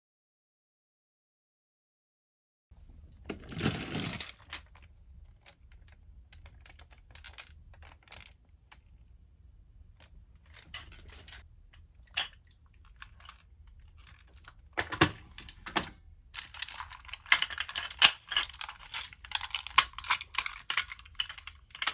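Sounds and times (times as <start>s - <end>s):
plastic rustle: 2.8s - 8.4s, 16.4s - 21.9s
plastic toy parts clicking: 3.3s - 8.9s, 10.0s - 11.4s, 12.0s - 21.9s.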